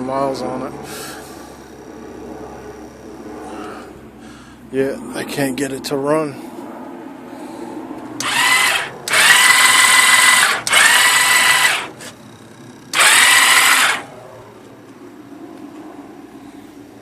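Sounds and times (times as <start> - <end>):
electric starter motor whining: 8.2 - 14.1.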